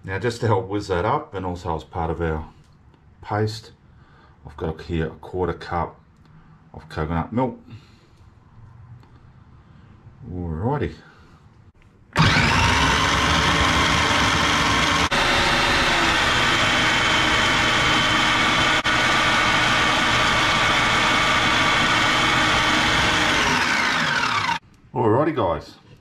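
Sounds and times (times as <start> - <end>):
blender motor running: 12.2 - 24.6.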